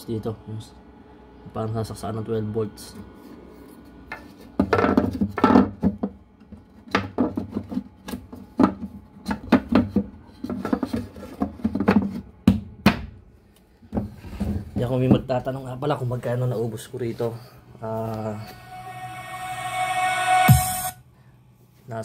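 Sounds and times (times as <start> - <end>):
objects knocking and scraping: 4.1 - 12.3.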